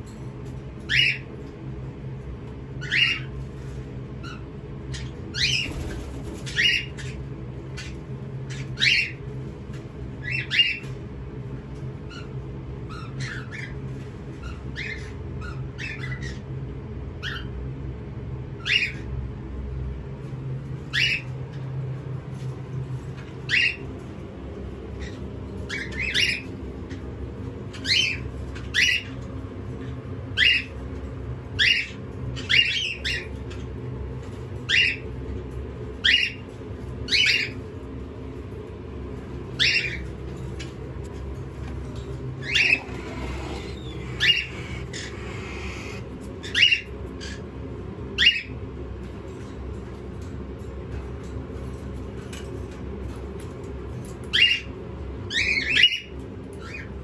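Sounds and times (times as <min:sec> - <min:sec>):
steady low hum: 0:37.7 - 0:49.3
parrot squawking: 0:42.4 - 0:46.8.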